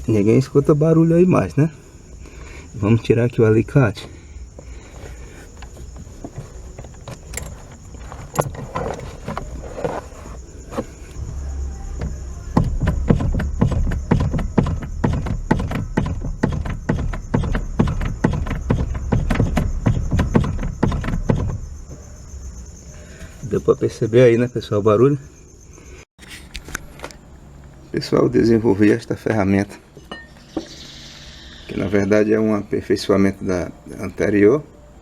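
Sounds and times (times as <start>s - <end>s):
steering knocking: 2.0s - 23.5s.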